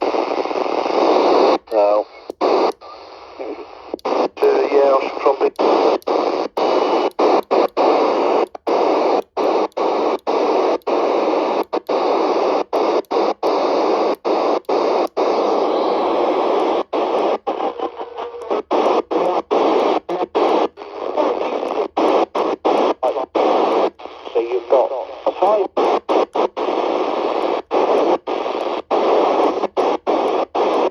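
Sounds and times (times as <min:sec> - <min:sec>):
radio receiver hiss: 0:00.0 - 0:30.9.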